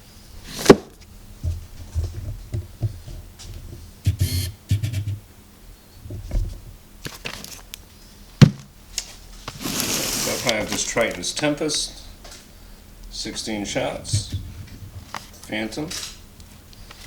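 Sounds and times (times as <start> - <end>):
cardboard scraping rustles: 7.0 - 7.7, 9.4 - 11.4
cardboard box bumps and clicks: 8.4 - 8.7.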